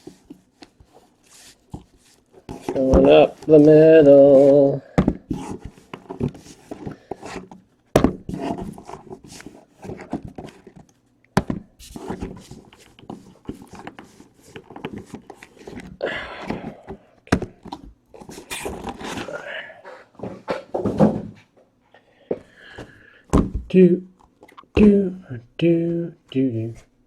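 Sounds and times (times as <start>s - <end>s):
cardboard box rustling: 0.0s - 16.0s, 16.6s - 19.4s.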